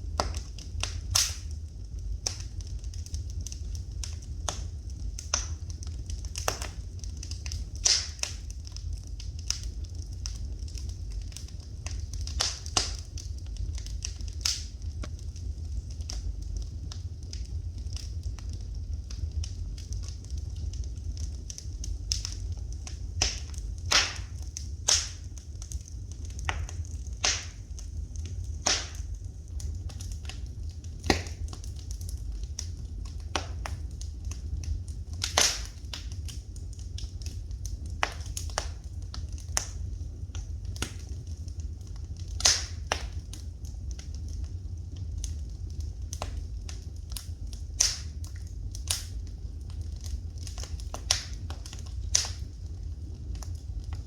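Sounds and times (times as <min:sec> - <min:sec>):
fireplace fire crackling: 0:00.0 - 0:54.0
steady low rumble: 0:00.0 - 0:54.0
sharp pops and snaps: 0:00.1 - 0:01.6, 0:02.2 - 0:15.2, 0:15.8 - 0:44.4, 0:45.2 - 0:52.5.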